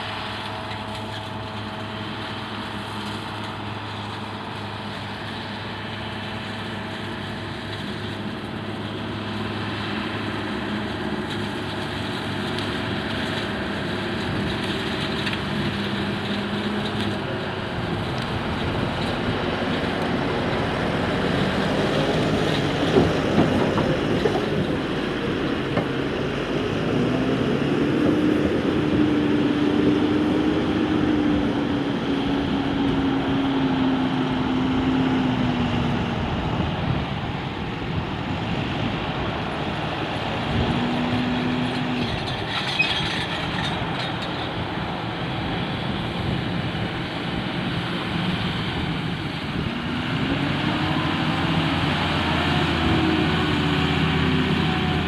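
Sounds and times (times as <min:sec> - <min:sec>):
farm machinery engine: 0:00.0 - 0:55.0
clattering rattle: 0:42.0 - 0:44.5.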